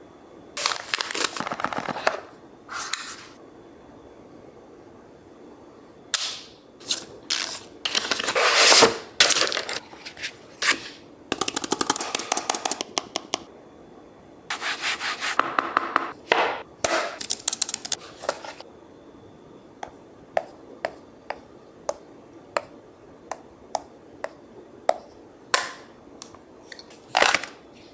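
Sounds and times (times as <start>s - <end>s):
packaging rubbing and rustling: 0.6s - 3.4s, 7.9s - 11.0s.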